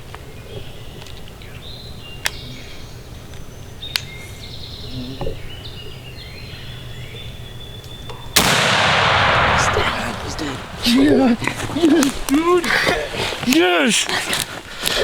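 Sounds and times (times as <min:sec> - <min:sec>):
birds chirping: 0:00.0 - 0:15.0
loud gunshot: 0:08.4 - 0:11.8.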